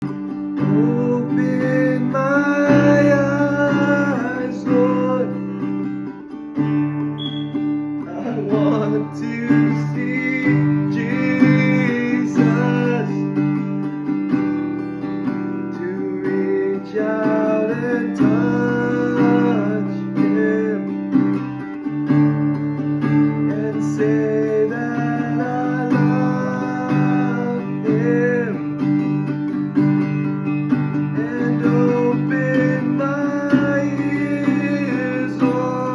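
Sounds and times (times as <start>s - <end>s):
acoustic guitar strumming: 0.0s - 35.9s
person singing: 0.6s - 5.8s, 8.0s - 13.6s, 15.7s - 21.4s, 23.4s - 29.1s, 31.0s - 35.9s.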